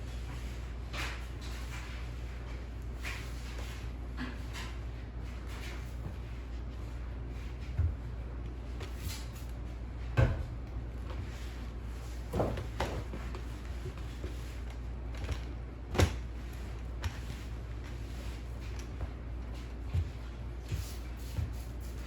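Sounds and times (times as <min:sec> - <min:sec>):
steady low hum: 0:00.0 - 0:22.0
knocks and bumps of handling: 0:12.2 - 0:20.8.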